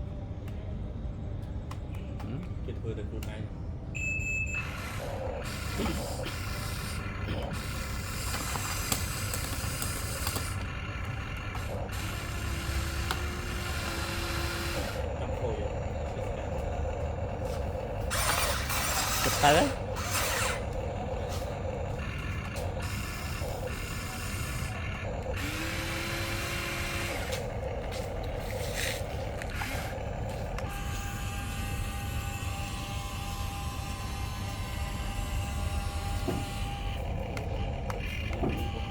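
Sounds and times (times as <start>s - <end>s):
toy excavator motors running: 4.0s - 38.9s
sharp clicks of moving parts: 7.3s - 15.5s.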